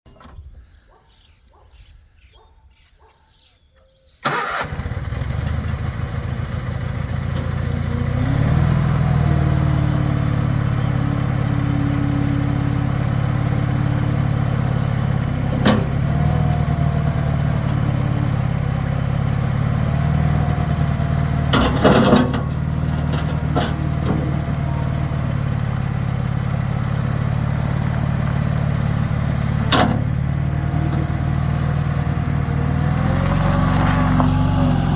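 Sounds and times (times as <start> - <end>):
skid steer engine running: 4.3 - 34.9
knocks and clanks: 21.5 - 24.6, 29.6 - 31.4.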